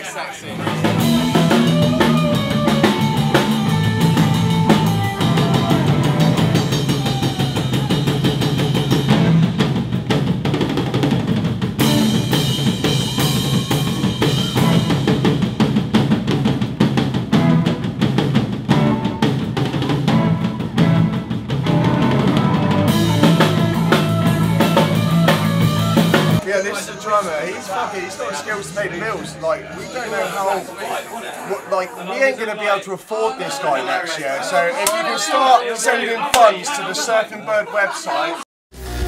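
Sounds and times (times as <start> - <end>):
band music: 0.0 - 31.5
rock drum kit played fast: 0.6 - 26.4.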